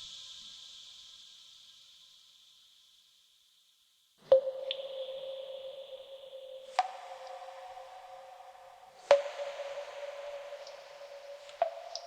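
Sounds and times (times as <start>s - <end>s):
faint water drip: 0.0s - 12.0s
water drop plink: 4.3s - 12.0s.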